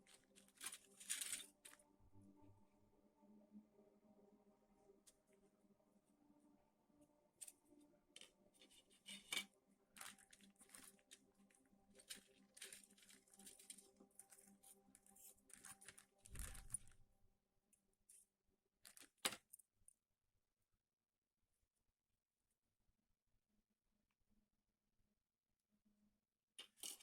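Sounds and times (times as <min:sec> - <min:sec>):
plastic packaging rustling: 0:00.0 - 0:01.8, 0:10.0 - 0:11.3, 0:11.9 - 0:17.0.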